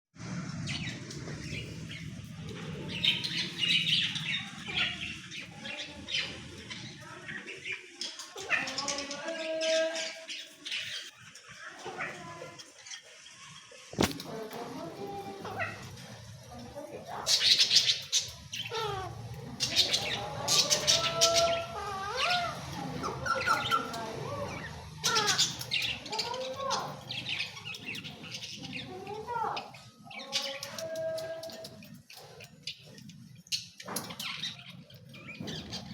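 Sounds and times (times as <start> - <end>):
parrot squawking and chattering: 17.1 - 35.9
parrot harsh squawks: 17.4 - 26.3.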